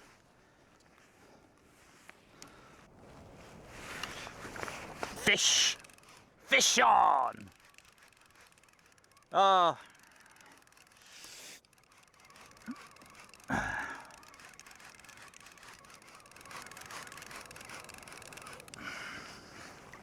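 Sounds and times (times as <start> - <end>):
water noise: 14.1 - 20.0.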